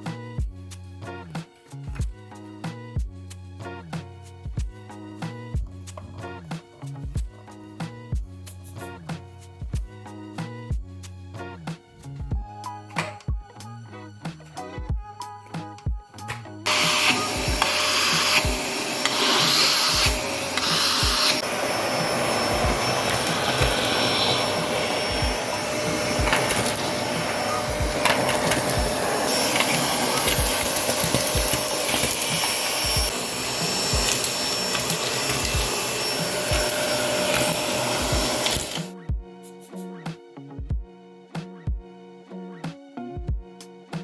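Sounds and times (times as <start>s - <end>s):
faint music beat: 0.0s - 41.9s
vacuum cleaner running: 16.7s - 39.0s.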